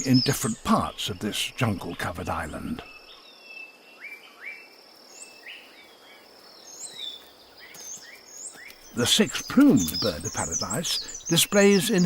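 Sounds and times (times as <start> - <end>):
chirping call notes: 0.0 - 2.9, 8.5 - 12.0.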